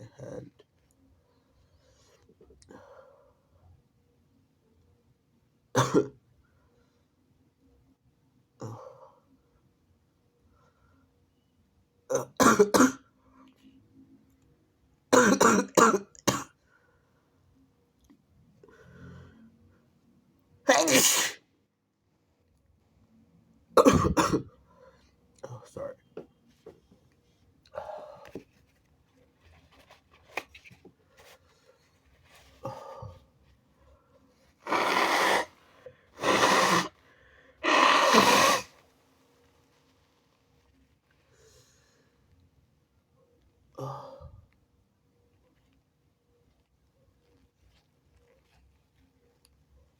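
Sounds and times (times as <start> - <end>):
person stifling sneezes: 20.7 - 21.4, 23.8 - 24.5, 34.6 - 35.6, 36.2 - 37.0, 37.6 - 38.8.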